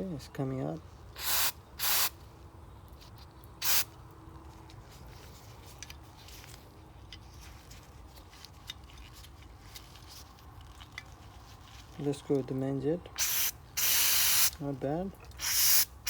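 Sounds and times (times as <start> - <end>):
aerosol spray hissing: 1.2 - 2.1, 13.2 - 14.6.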